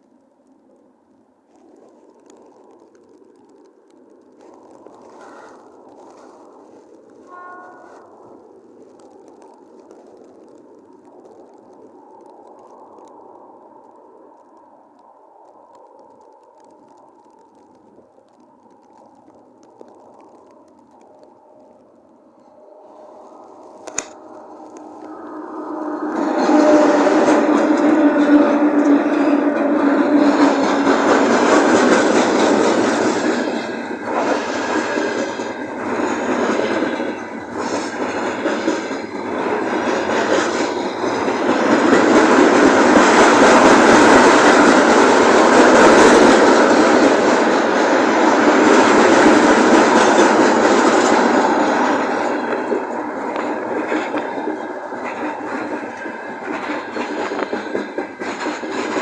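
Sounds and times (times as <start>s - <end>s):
train wheels clacking over rails: 23.6s - 59.0s.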